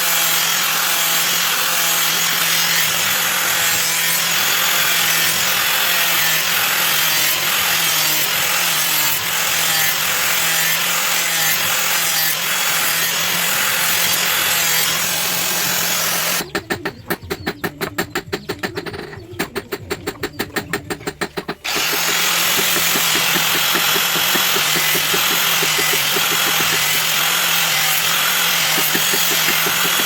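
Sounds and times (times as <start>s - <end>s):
power tool rasping: 0.0s - 16.5s, 21.0s - 30.0s
fast even pulsing: 13.6s - 27.3s.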